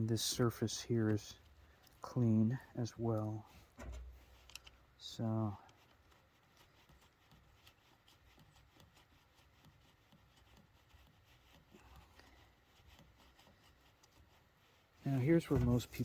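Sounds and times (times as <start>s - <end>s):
hands handling metal parts: 15.1s - 16.0s.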